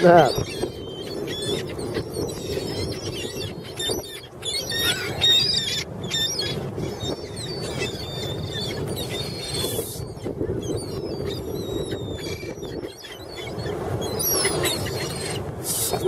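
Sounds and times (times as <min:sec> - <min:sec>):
gulls squealing and crying: 0:00.0 - 0:16.0.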